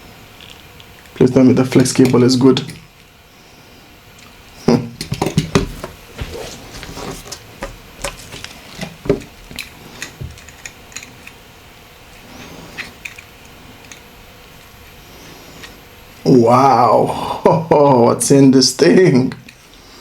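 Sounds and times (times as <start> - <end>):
small parts clicking and scraping: 5.0 - 11.5, 12.1 - 15.8.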